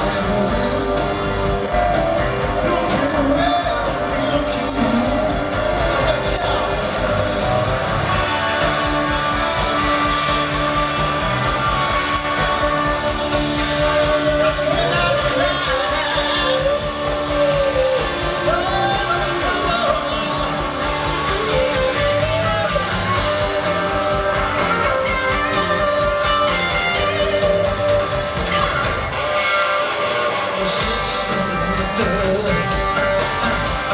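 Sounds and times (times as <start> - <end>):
man singing lead: 0.0 - 29.0, 30.3 - 33.9
live rock band playing: 0.0 - 33.9.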